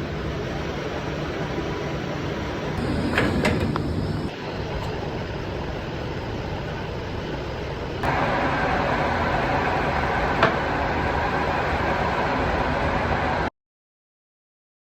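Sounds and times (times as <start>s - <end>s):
surface planer running: 2.8s - 4.3s.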